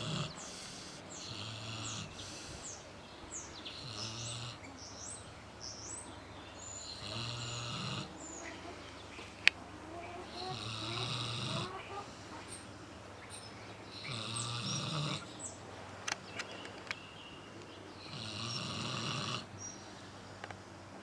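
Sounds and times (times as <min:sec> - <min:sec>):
pig snoring: 0:00.0 - 0:02.8, 0:03.7 - 0:04.7, 0:06.8 - 0:08.4, 0:10.2 - 0:12.1, 0:13.9 - 0:15.4, 0:18.0 - 0:19.5.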